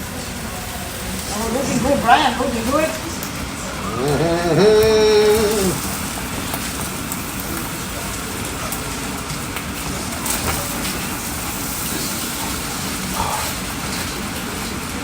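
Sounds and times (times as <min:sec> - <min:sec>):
fried rice sizzling in a pan: 0:06.4 - 0:15.0.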